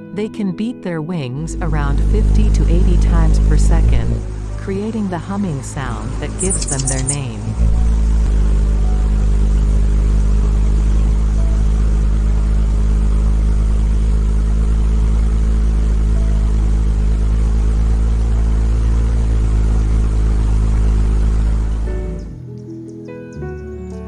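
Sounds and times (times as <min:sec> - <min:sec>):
hummingbird wings humming: 0:02.4 - 0:07.6, 0:21.6 - 0:24.0.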